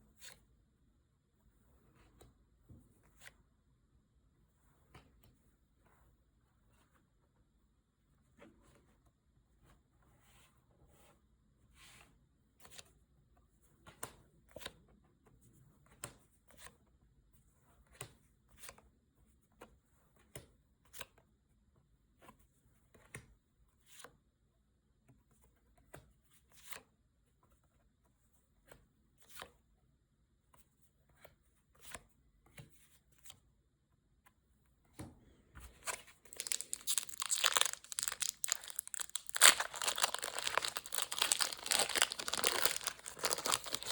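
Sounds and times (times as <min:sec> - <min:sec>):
foil wrapper crinkling and tearing: 0:36.3 - 0:43.9.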